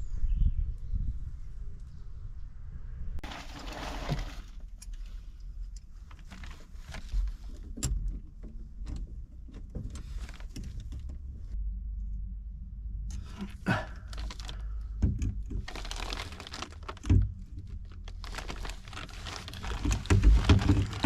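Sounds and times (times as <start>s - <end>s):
objects being handled: 3.2s - 5.2s, 13.4s - 21.0s
steady low rumble: 10.8s - 15.7s.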